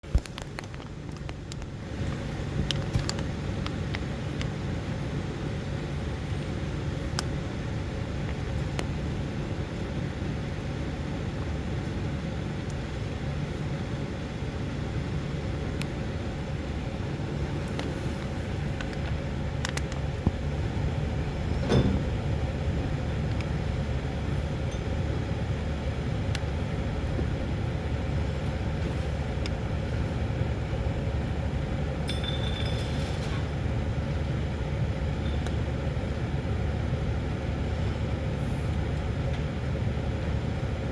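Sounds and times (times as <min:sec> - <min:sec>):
vehicle engine rumbling: 0:00.0 - 0:40.9
sharp clink: 0:32.1 - 0:32.9.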